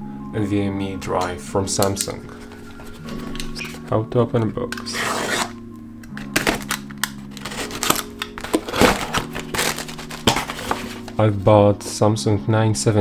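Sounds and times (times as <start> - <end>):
background music: 0.0 - 13.0
small box being opened: 1.7 - 11.5.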